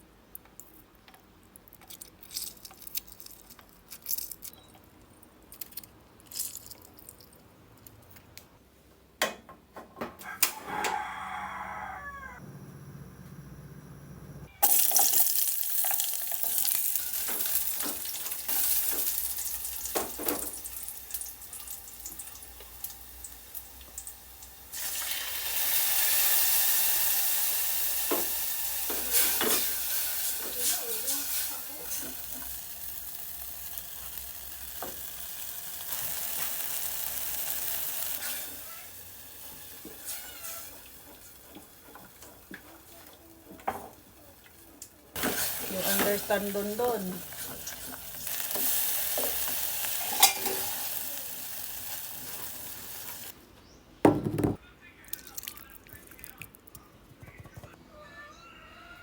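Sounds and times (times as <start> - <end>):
rooster crowing: 10.2 - 12.6, 57.9 - 59.0
food sizzling in hot oil: 14.6 - 43.0, 45.2 - 53.3
kitchen utensils clicking: 49.3 - 50.8.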